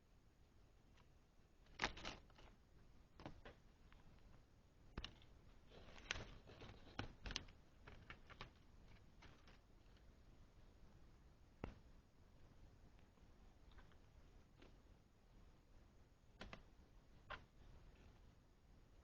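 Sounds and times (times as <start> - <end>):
light rustling of small objects: 0.8 - 15.6, 16.3 - 18.4
faint clicks and knocks: 0.9 - 10.2, 12.9 - 14.9, 16.3 - 18.3.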